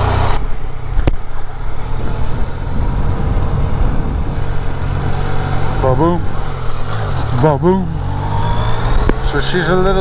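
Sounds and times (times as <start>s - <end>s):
motorcycle engine running: 0.0s - 10.0s.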